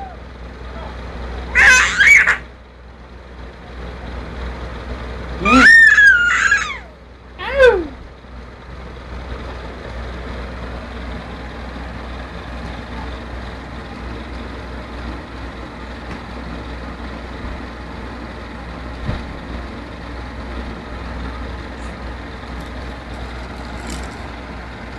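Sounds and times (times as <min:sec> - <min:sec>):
child squealing: 0:01.5 - 0:02.5, 0:05.4 - 0:08.0
steady low rumble: 0:07.0 - 0:24.9.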